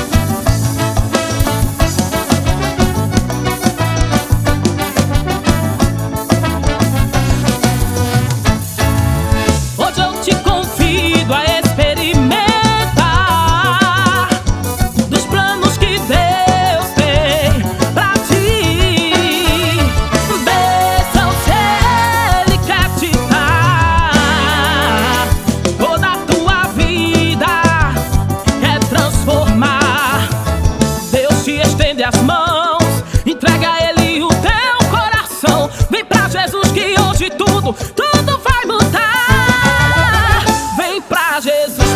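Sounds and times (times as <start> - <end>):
instrumental music with beat: 0.0 - 41.9.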